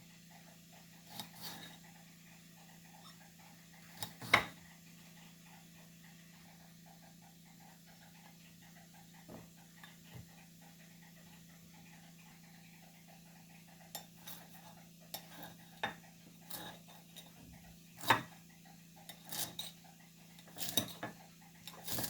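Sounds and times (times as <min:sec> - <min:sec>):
kitchenware clinking: 0:20.5 - 0:22.0.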